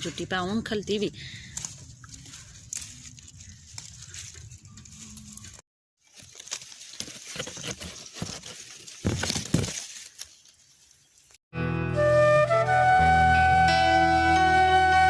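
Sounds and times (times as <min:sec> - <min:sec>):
leafy plants rustling: 0:00.0 - 0:11.4
leaves snapping: 0:01.4 - 0:10.6.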